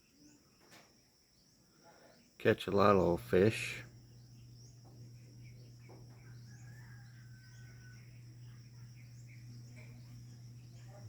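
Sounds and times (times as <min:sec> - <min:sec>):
bird calls: 0:00.0 - 0:11.0
insect drone: 0:00.0 - 0:11.0
low hum: 0:02.9 - 0:11.0.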